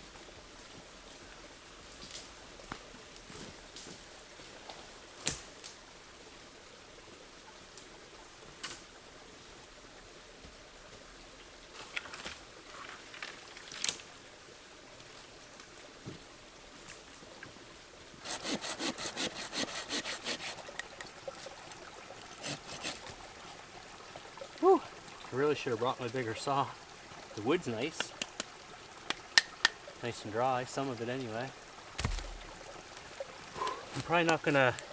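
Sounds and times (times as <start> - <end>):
stream trickling: 0.0 - 34.9
hand saw cutting wood: 18.2 - 21.6, 22.2 - 23.6
wood snaps and knocks: 32.0 - 33.1.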